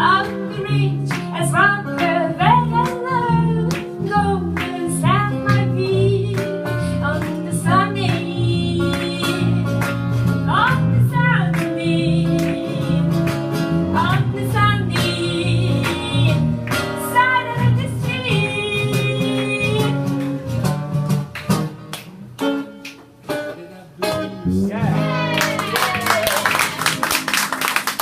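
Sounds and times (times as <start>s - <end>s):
plucked guitar: 0.0s - 27.4s
walking bass: 0.0s - 28.0s
person singing: 24.4s - 26.6s.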